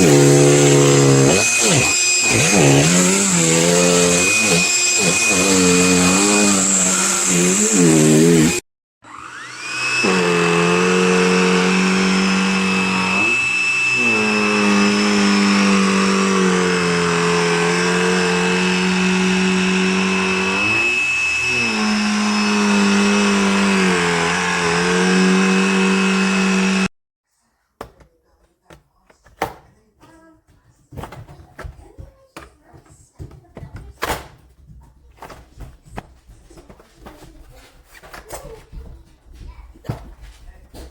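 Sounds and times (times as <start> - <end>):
handheld vacuum motor whining: 0.0 - 26.9.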